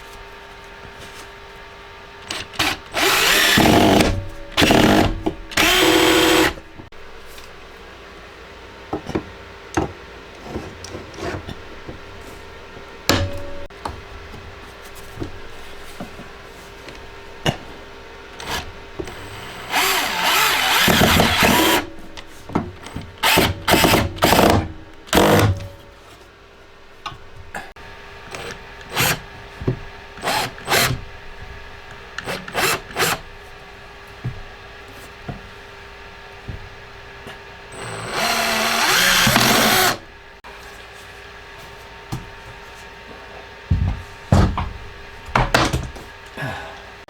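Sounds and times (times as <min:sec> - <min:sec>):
drill driving screws: 0:02.3 - 0:06.6, 0:18.4 - 0:22.0, 0:22.8 - 0:25.7, 0:28.3 - 0:29.2, 0:30.2 - 0:31.0, 0:32.2 - 0:33.2, 0:37.7 - 0:40.0.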